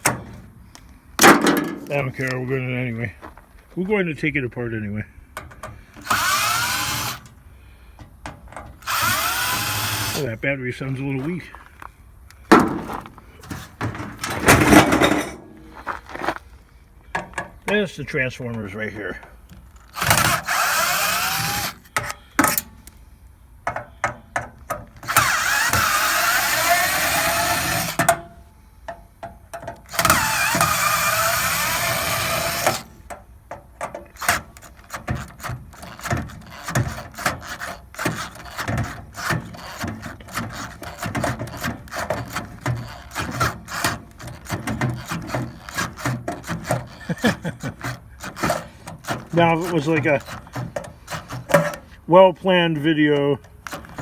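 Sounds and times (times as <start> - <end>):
cordless drill running: 5.9 - 7.3, 8.8 - 10.3, 19.7 - 22.1, 25.0 - 28.0, 29.9 - 33.0, 34.2 - 51.5
metal parts clicking and knocking: 12.3 - 16.3, 32.4 - 51.9, 53.4 - 54.0.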